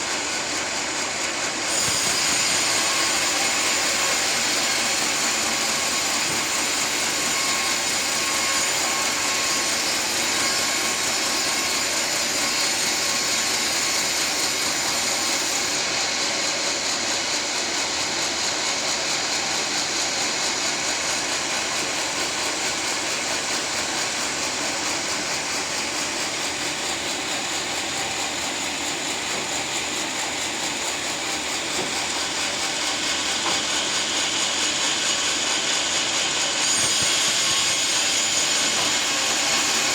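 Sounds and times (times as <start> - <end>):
sawmill sawing a log with whine: 0.0 - 39.9.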